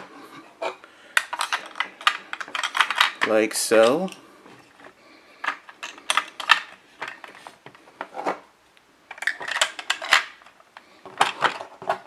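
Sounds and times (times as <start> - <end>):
plastic toy parts clicking: 1.2 - 4.2, 5.4 - 7.4, 9.1 - 12.0.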